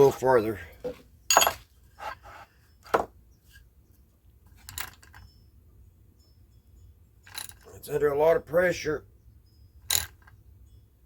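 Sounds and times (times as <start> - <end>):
metal tools clicking on engine part: 4.5 - 5.4, 6.8 - 8.1, 9.8 - 10.5.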